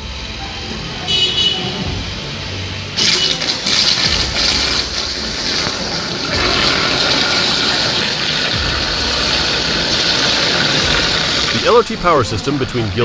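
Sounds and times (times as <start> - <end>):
loud rushing hiss: 0.3 - 13.0.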